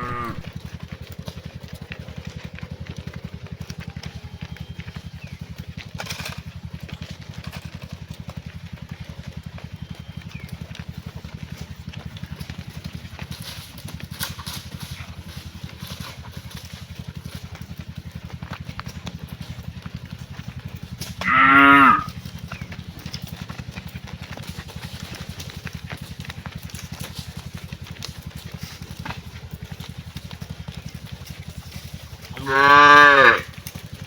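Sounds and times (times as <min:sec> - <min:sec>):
cow mooing: 0:00.0 - 0:00.6, 0:21.2 - 0:22.2, 0:32.3 - 0:33.6
low engine running: 0:00.0 - 0:34.0.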